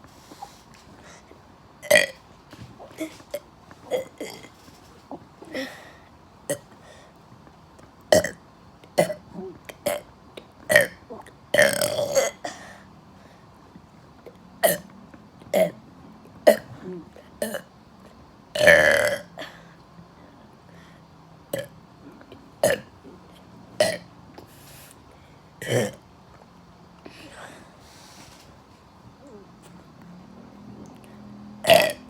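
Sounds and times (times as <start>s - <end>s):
person burping: 1.8s - 2.2s, 6.5s - 6.8s, 8.1s - 8.4s, 9.0s - 10.1s, 10.7s - 12.5s, 14.6s - 14.9s, 18.6s - 19.5s, 22.6s - 22.9s, 23.8s - 24.1s, 25.6s - 26.0s, 31.6s - 32.0s.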